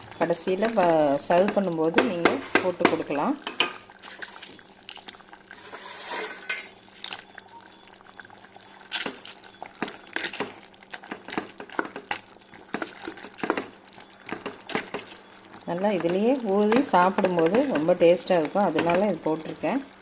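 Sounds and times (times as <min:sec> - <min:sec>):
spoon stirring in pot: 0:00.2 - 0:07.4, 0:08.5 - 0:19.6.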